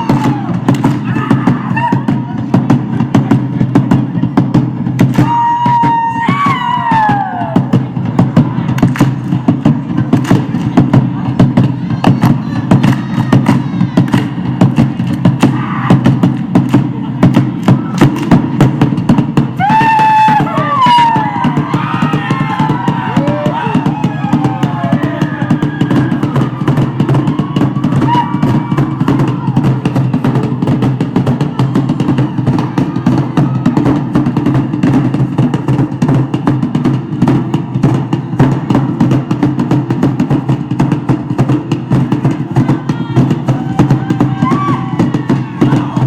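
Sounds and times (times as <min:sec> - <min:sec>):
fast drum ensemble drumming: 0:00.0 - 0:46.0.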